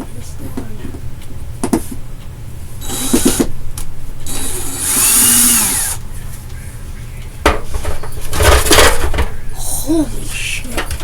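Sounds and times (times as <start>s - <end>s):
power tool motor running: 2.8s - 3.5s, 4.2s - 6.0s.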